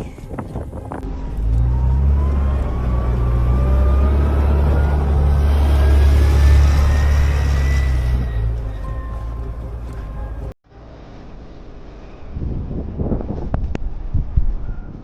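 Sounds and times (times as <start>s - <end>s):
vehicle engine low rumble: 0.0s - 15.0s
rising whine: 1.0s - 10.3s.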